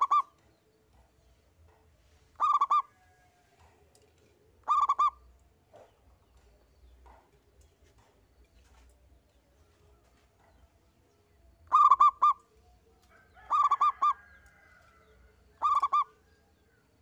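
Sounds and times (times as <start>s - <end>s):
dove cooing: 0.0s - 0.4s, 2.4s - 3.1s, 4.6s - 5.2s, 11.7s - 12.4s, 13.4s - 14.2s, 15.6s - 16.2s.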